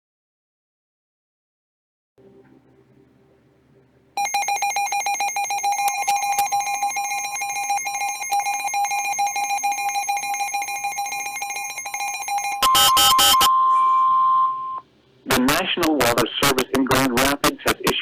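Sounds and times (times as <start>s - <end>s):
harsh electronic alert tone: 4.2s - 14.8s.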